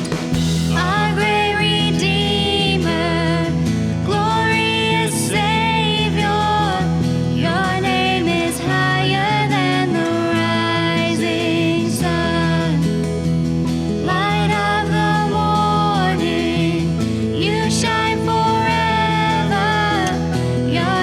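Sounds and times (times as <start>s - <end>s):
acoustic guitar: 0.0s - 21.0s
person singing worship song: 0.7s - 12.8s, 14.0s - 21.0s.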